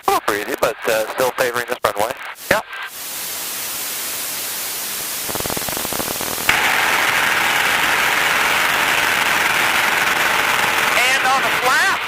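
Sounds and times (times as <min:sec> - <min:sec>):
light aircraft engine and propeller: 0:06.5 - 0:12.0.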